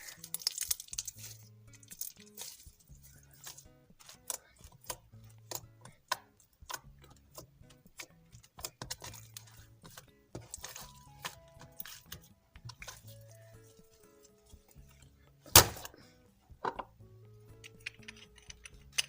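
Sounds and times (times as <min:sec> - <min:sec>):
soft background music: 0:00.0 - 0:19.0
sharp clicks and pops: 0:17.5 - 0:19.0.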